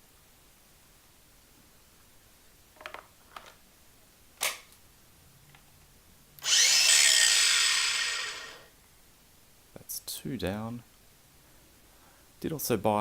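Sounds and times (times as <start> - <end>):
angle grinder high whine: 6.4 - 8.7.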